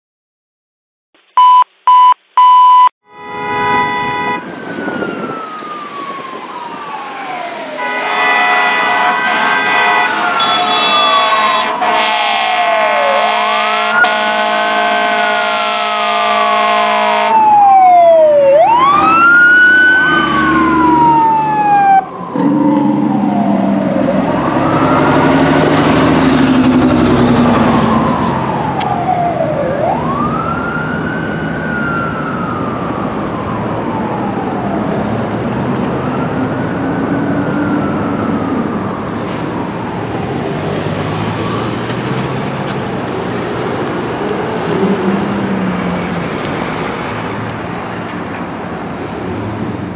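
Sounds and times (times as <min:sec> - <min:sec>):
fire truck air horns blasting: 0:03.0 - 0:04.6, 0:07.6 - 0:17.4
wailing siren: 0:03.0 - 0:49.8
second siren sweeping fast: 0:03.1 - 0:35.2, 0:36.0 - 0:42.6
diesel engine rumbling: 0:03.2 - 0:49.9.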